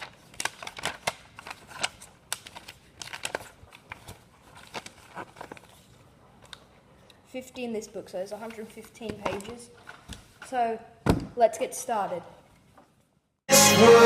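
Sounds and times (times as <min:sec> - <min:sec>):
paper booklet rustling: 0:00.0 - 0:07.0, 0:07.8 - 0:10.5.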